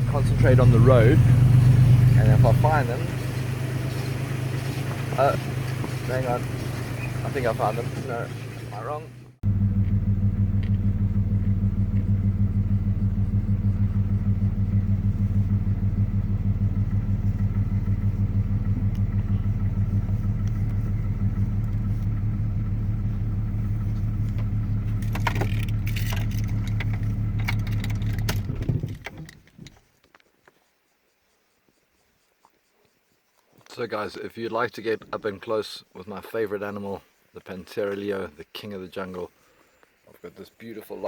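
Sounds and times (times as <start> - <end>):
vehicle engine running: 0.0 - 29.0
clicking and rattling: 24.2 - 30.2.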